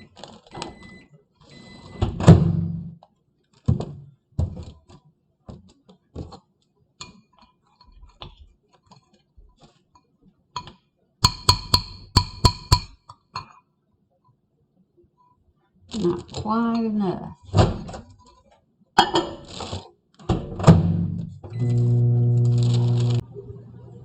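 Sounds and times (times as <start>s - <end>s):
kitchen knocks and clicks: 10.6s - 13.5s.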